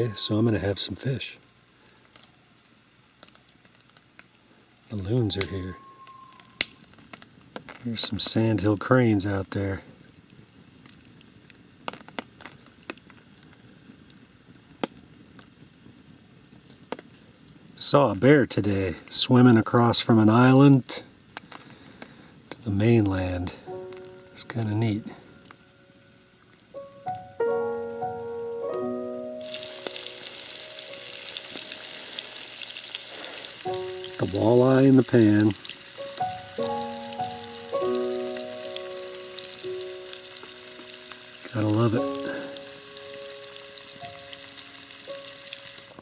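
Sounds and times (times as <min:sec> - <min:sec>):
fish sizzling in a pan: 0:00.0 - 0:17.8, 0:29.4 - 0:46.0
low background hiss: 0:00.0 - 0:46.0
sharp pops and ticks: 0:01.5 - 0:08.0, 0:10.0 - 0:17.8, 0:21.2 - 0:25.7, 0:29.4 - 0:46.0
background music: 0:23.2 - 0:46.0.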